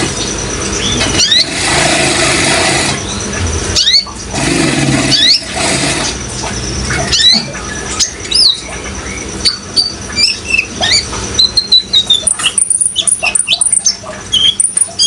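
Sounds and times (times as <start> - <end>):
running water rushing: 0.0 - 7.7
bird chirping: 6.6 - 15.0.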